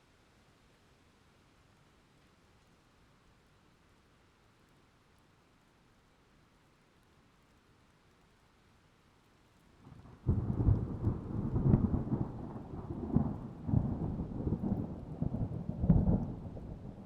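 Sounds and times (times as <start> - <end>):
low thunder rumble: 10.1 - 17.0.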